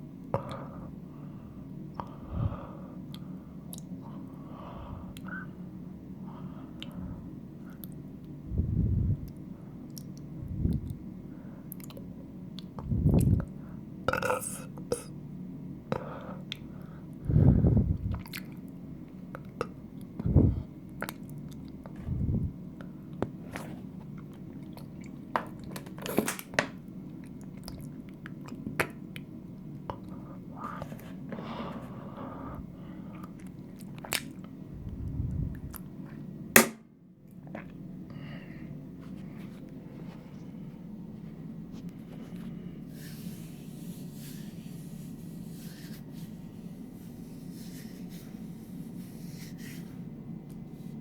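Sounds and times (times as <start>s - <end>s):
person gulping water: 18.0s - 18.7s
wet mouth clicks and smacks: 33.2s - 34.4s.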